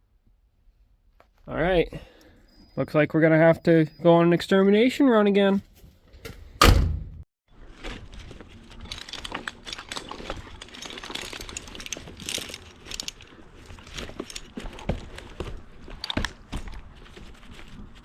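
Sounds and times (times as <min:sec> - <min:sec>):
climbing gear clicking and scraping on bark: 0:07.8 - 0:18.0.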